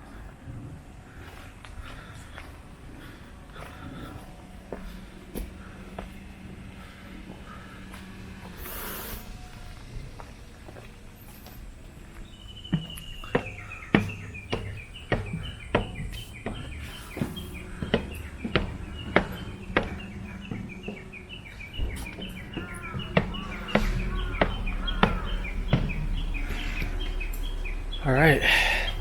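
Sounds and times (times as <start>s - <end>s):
birdsong: 0.0s - 29.0s
footsteps on forest trail: 0.0s - 29.0s
low rumble: 2.6s - 29.0s
bird chirping: 12.0s - 29.0s.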